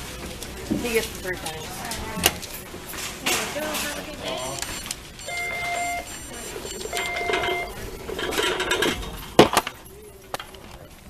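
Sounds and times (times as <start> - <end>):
items clinking and rattling: 0.0 - 11.0
electronic beeps: 4.1 - 10.2.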